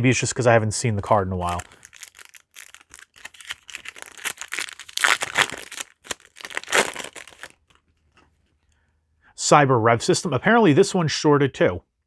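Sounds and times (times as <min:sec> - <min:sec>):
foil wrapper crinkling: 0:01.0 - 0:07.8.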